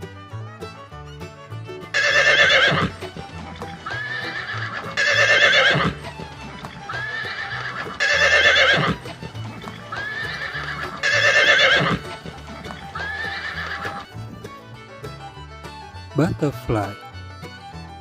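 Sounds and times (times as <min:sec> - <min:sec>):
horse neighing: 0:01.9 - 0:14.1.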